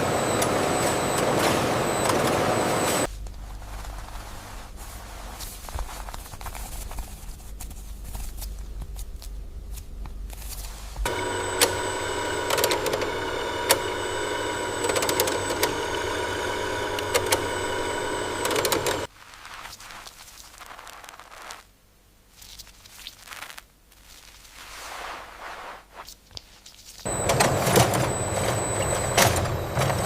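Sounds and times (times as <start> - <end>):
machinery humming with held tones: 0.0 - 3.1, 11.0 - 19.1, 27.1 - 30.0
factory machinery rumbling: 27.1 - 30.0.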